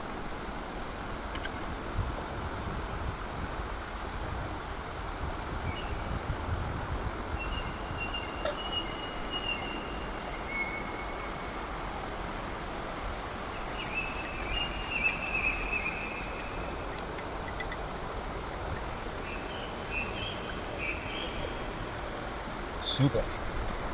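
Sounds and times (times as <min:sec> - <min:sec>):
steady rushing hiss: 0:11.6 - 0:23.9.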